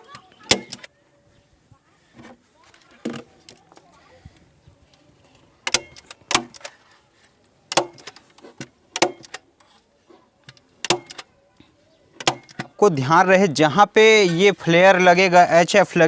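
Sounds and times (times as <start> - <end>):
tools knocking and clinking: 7.7 - 9.4, 12.2 - 12.8.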